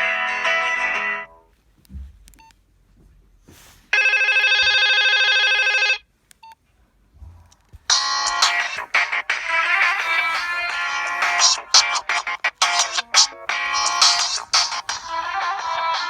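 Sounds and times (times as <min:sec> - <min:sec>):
ringtone music: 0:00.0 - 0:01.3, 0:07.9 - 0:16.0.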